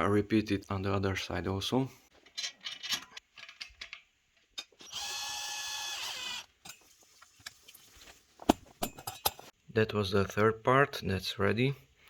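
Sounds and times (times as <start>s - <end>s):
screwdriver mechanical whirr: 4.8s - 6.5s.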